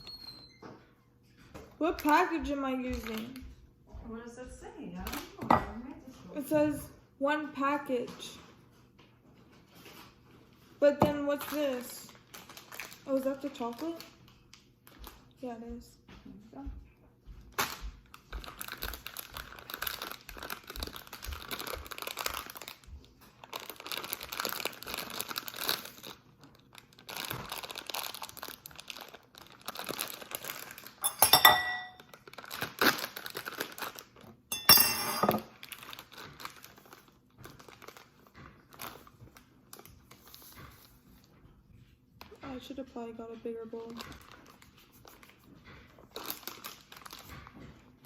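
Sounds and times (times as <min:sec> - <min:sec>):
plastic packaging crinkling: 0:11.3 - 0:15.2, 0:17.5 - 0:31.1, 0:31.9 - 0:34.4, 0:35.4 - 0:40.9, 0:43.8 - 0:45.4, 0:46.0 - 0:47.6
clinking knocks against dish: 0:31.0 - 0:32.0, 0:34.5 - 0:35.4.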